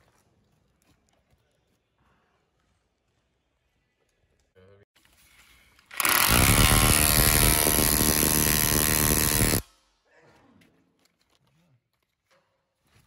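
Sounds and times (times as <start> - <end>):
impact drill hammering: 5.9 - 9.6.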